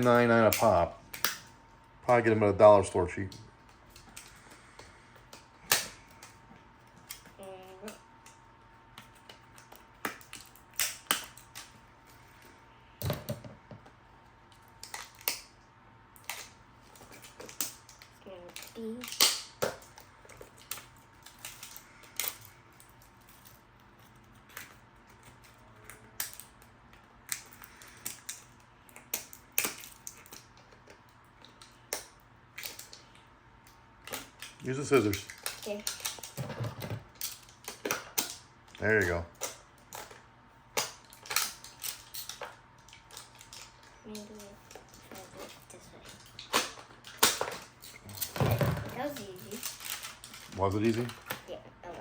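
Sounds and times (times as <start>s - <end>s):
plastic package clicking and crackling: 3.2s - 11.8s, 14.5s - 15.5s, 16.2s - 36.4s, 37.1s - 51.4s.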